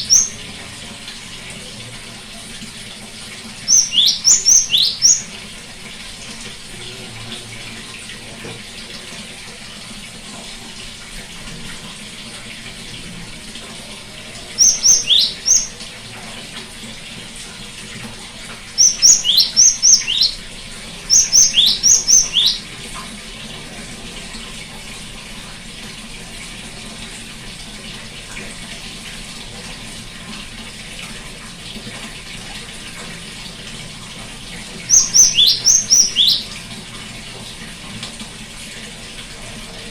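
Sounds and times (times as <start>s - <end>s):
great tit singing: 0.0s - 0.4s, 3.6s - 5.3s, 14.5s - 15.8s, 18.8s - 22.7s, 34.9s - 36.6s.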